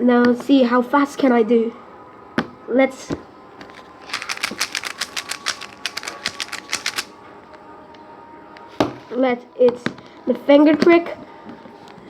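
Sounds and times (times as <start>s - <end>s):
speed cube clacking: 3.8s - 7.1s.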